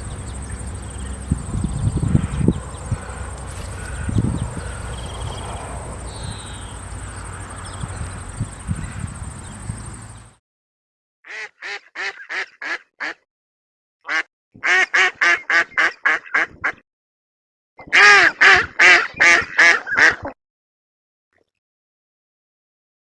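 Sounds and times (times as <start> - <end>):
duck quacking: 2.0 - 4.9, 11.3 - 13.2, 14.1 - 16.8, 17.8 - 20.4.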